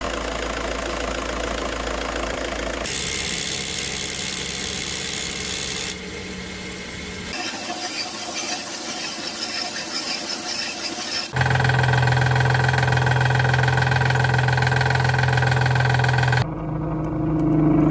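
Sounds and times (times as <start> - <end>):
car engines running: 11.4 - 17.9.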